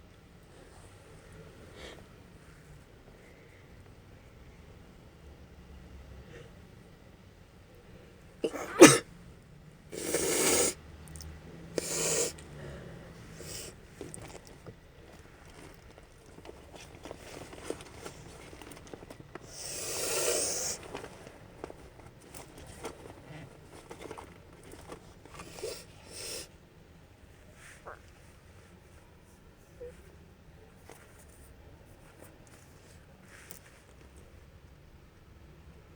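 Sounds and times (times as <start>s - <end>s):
woman sneezing: 8.5s - 9.0s
sniffs and breaths: 9.9s - 10.8s, 11.6s - 26.5s.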